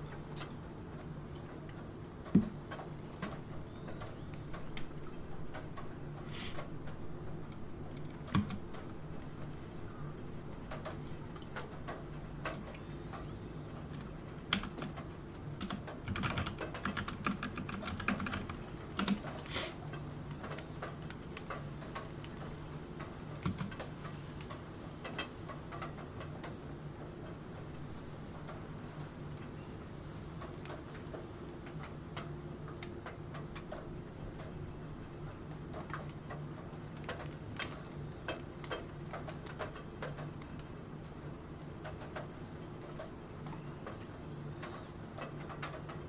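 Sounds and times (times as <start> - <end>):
steady rain: 0.0 - 29.4, 30.0 - 46.0
computer keyboard keystrokes: 8.0 - 8.8, 13.9 - 19.4, 23.4 - 24.5.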